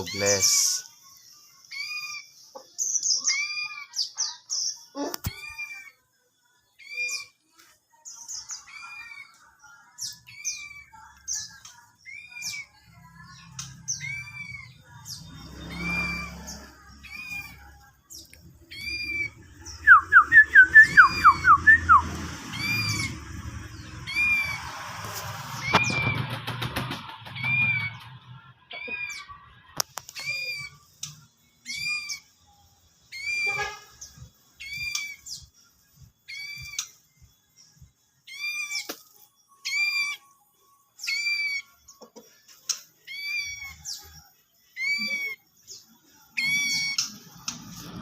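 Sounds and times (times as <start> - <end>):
scattered bird chirps: 0.0 - 48.0
falling whistled bird notes: 18.7 - 23.2.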